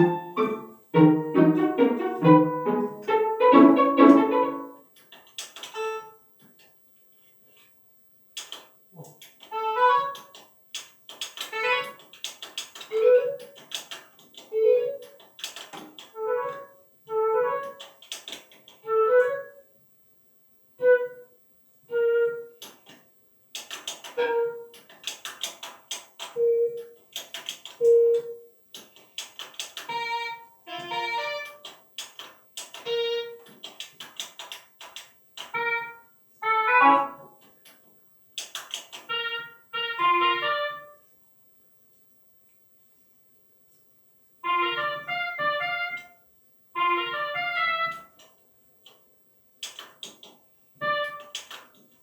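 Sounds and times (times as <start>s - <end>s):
plucky keyboard melody: 0.0s - 4.8s, 35.6s - 37.3s.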